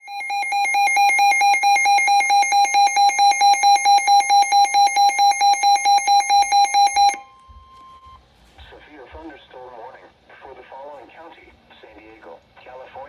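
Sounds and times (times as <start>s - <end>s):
emergency alert alarm beeping: 0.0s - 8.7s.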